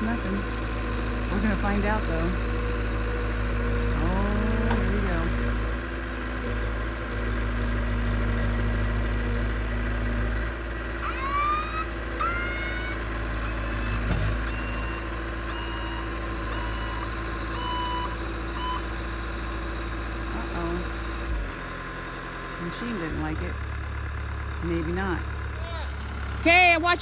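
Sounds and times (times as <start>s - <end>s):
heavy machine engine under load: 0.0s - 27.0s
rising squeals: 7.4s - 19.8s
short high tones: 11.0s - 18.8s.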